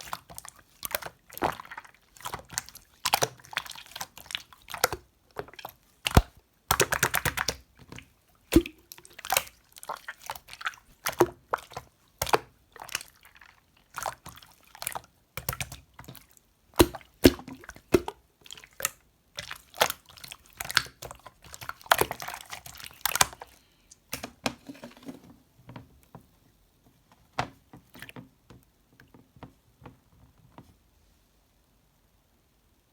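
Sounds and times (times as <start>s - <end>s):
slime squelching and popping: 0.0s - 24.4s.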